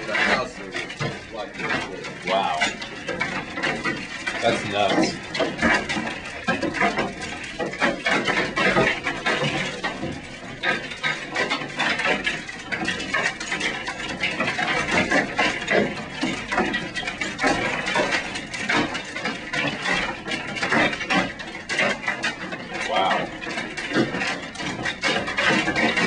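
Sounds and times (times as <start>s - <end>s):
hailstones pounding building: 0.0s - 26.0s.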